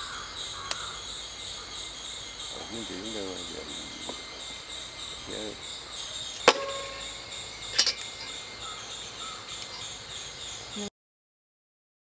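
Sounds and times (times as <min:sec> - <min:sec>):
insects chirring: 0:00.0 - 0:10.9
sharp knocks: 0:06.4 - 0:07.2.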